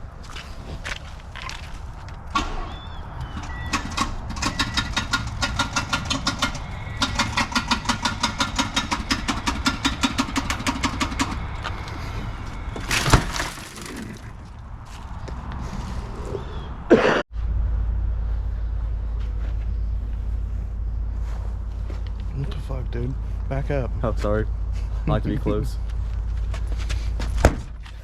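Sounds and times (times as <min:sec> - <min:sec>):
car engine cranking on starter: 0:02.3 - 0:11.4.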